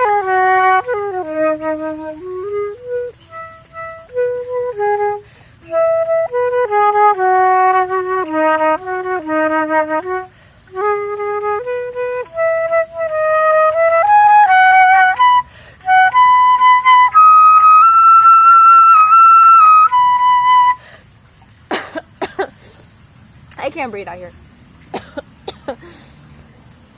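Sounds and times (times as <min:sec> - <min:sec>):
solo flute melody: 0:00.0 - 0:20.9.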